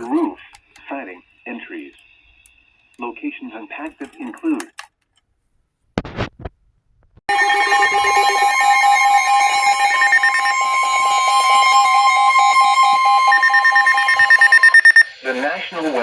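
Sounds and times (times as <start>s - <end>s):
pulsing multi-tone alert: 7.3s - 16.0s
steady high tone: 7.3s - 16.0s.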